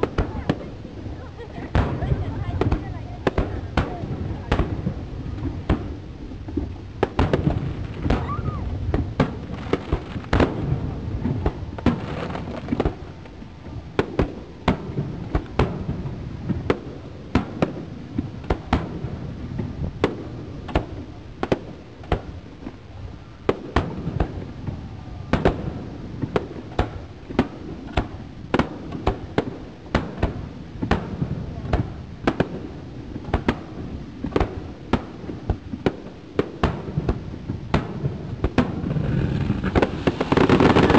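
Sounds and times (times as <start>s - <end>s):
firework shells bursting: 33.3s - 40.9s.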